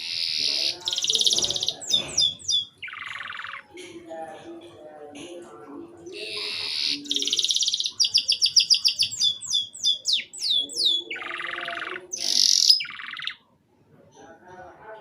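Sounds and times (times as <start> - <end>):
canary singing: 0.0 - 4.0, 5.9 - 13.5.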